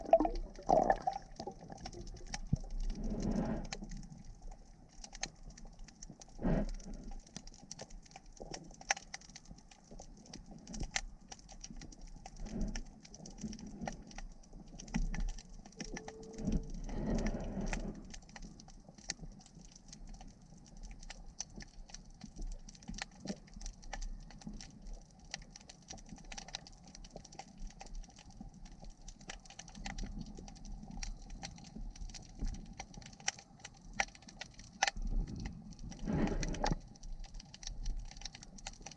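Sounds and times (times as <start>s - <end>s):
low underwater whooshing: 0.0s - 3.7s
underwater crackle of clicks: 0.0s - 38.9s.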